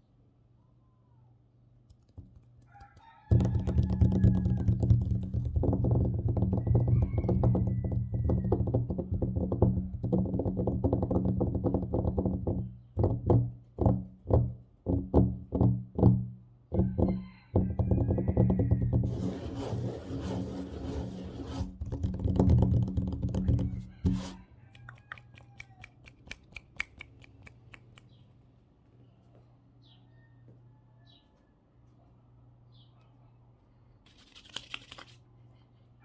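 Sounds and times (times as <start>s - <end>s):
fingers tapping on tabletop: 1.9s - 16.2s, 16.8s - 19.4s, 21.5s - 27.9s.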